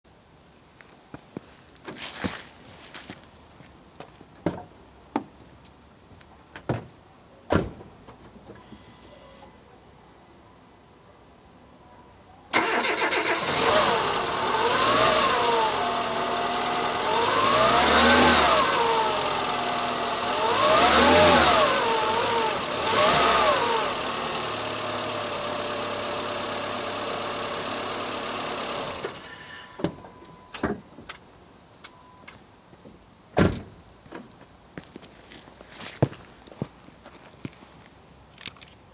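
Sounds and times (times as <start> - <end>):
engine cranking and revving: 12.6 - 29.3.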